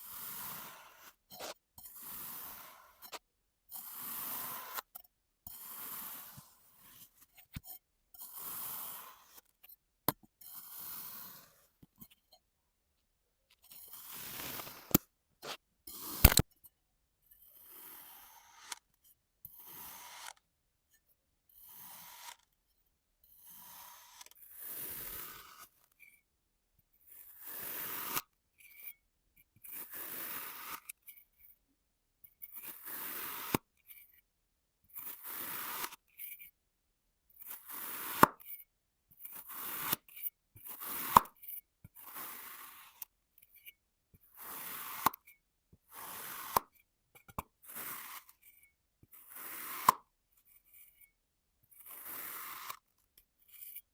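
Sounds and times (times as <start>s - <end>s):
blade slicing through sand: 0.0s - 3.2s, 3.8s - 4.9s, 5.6s - 7.0s, 10.6s - 11.6s, 13.9s - 16.4s, 47.7s - 48.3s
sharp clicks: 16.2s - 16.4s.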